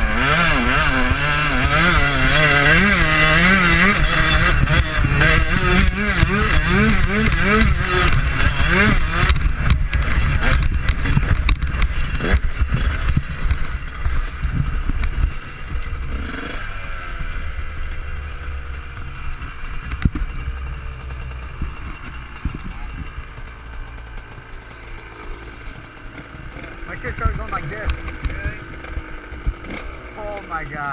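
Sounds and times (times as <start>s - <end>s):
dirt bike engine revving: 0.0s - 30.9s
low rumble and knocks: 18.7s - 24.9s.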